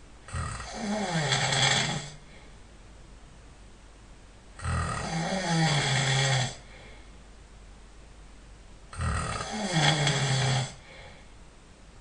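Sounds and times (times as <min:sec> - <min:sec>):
man snoring: 0:00.3 - 0:02.2, 0:04.6 - 0:06.7, 0:08.9 - 0:11.0.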